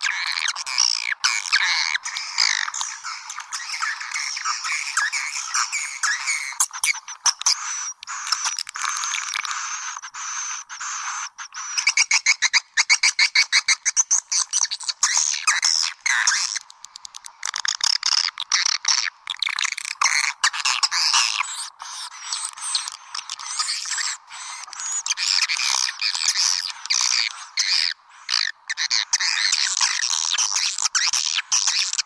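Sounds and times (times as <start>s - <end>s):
rapid bird clicks: 0.0s - 32.0s
swiftlet twittering chirps: 1.9s - 15.2s.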